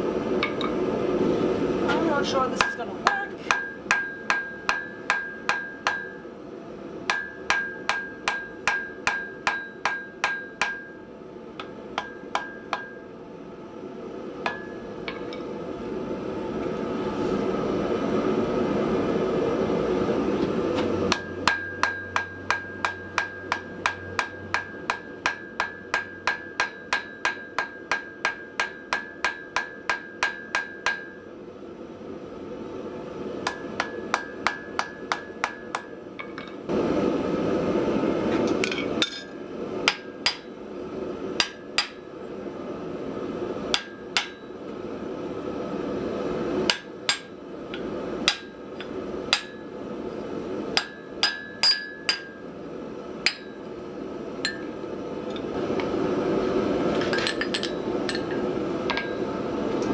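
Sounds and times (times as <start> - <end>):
hammer striking steel on anvil: 0.4 - 0.8, 2.6 - 6.3, 7.1 - 13.1, 14.4 - 15.5, 21.1 - 31.3, 33.4 - 36.6, 38.4 - 40.6, 41.4 - 42.1, 43.7 - 44.7, 46.7 - 49.8, 50.7 - 52.5, 53.2 - 53.8, 54.4 - 56.0, 56.9 - 59.4.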